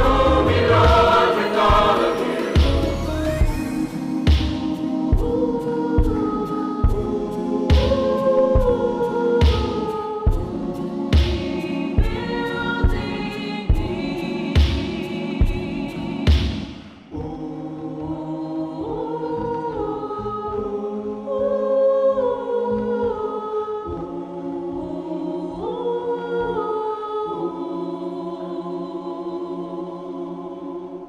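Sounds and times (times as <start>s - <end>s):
steady low beat: 0.0s - 17.4s
gospel choir singing: 0.0s - 31.0s.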